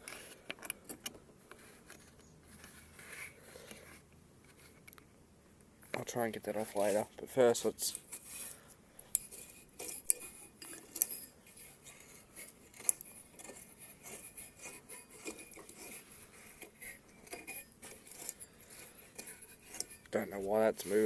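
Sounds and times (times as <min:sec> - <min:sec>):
metal parts clinking and rattling: 0:09.2 - 0:12.0.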